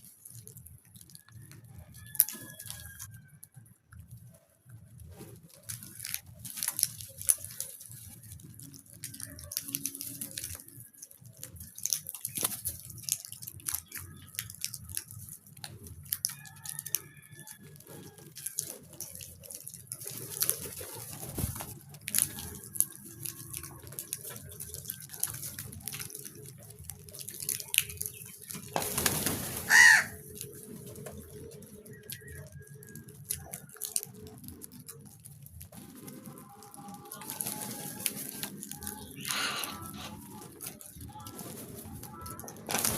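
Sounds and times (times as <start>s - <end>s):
loud bird call: 29.7s - 30.2s.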